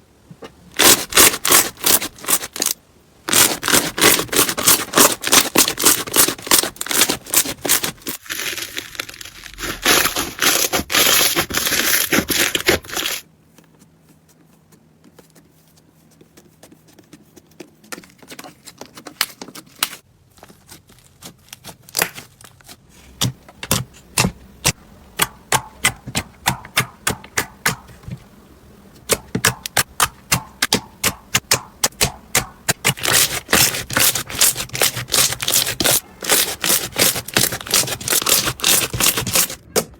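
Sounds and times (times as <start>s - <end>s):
slime crackling and popping: 0.8s - 13.2s, 29.4s - 39.7s.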